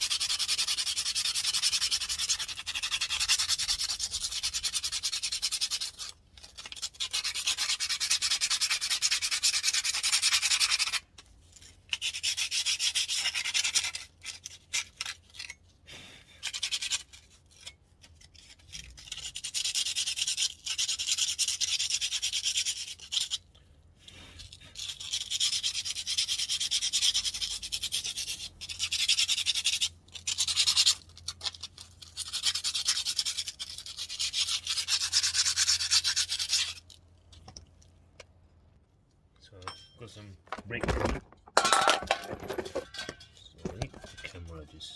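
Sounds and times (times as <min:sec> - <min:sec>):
sandpaper scraping metal disc: 0:24.8 - 0:36.9.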